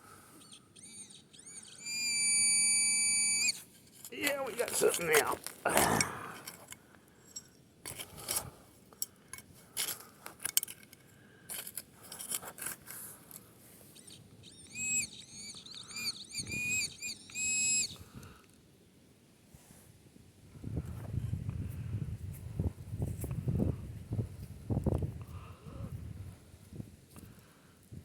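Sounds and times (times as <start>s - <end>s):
metal detector beeping: 0.4s - 5.4s, 14.0s - 18.0s
digging in soil: 3.6s - 6.7s, 11.5s - 13.5s.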